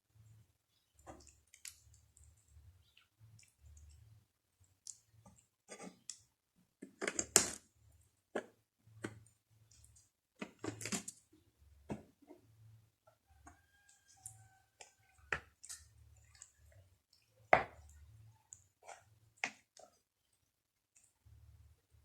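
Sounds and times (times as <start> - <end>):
chewing: 13.4 - 20.0.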